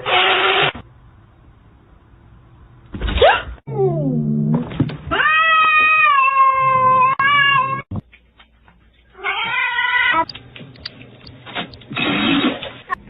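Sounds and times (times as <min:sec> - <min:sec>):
cat meowing: 0:09.2 - 0:10.3.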